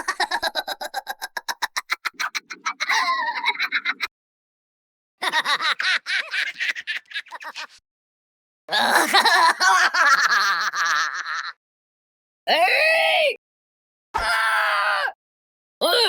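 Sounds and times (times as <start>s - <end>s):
cartoon laughter: 0.0s - 4.1s, 5.2s - 7.8s, 8.8s - 11.6s.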